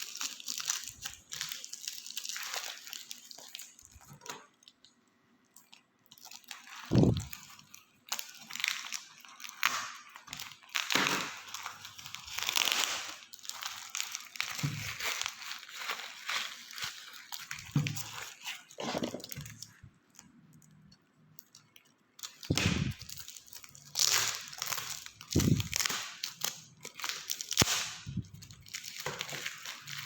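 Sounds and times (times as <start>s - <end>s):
plastic packaging crinkling and tearing: 0.0s - 30.0s.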